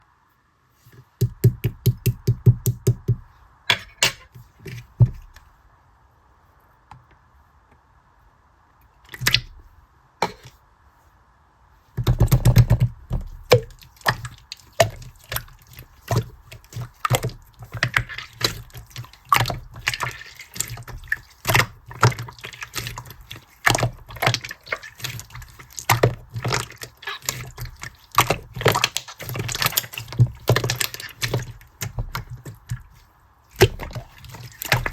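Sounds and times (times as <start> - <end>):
slime squishing and popping: 12.0 - 32.9.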